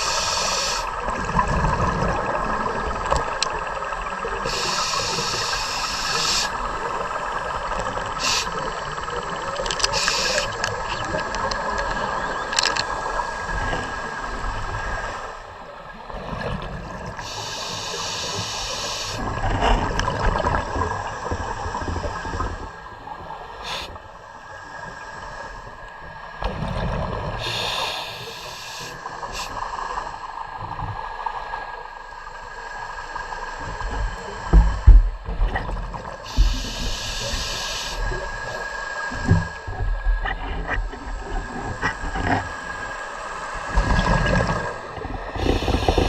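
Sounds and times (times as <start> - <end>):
scuba regulator hissing inhalations: 0.0 - 1.0, 4.4 - 6.7, 8.1 - 11.0, 17.2 - 19.3, 23.6 - 24.0, 27.4 - 29.7, 36.2 - 39.1, 45.2 - 46.0
gurgling exhaled bubbles: 0.0 - 15.1, 16.0 - 24.0, 33.7 - 46.0.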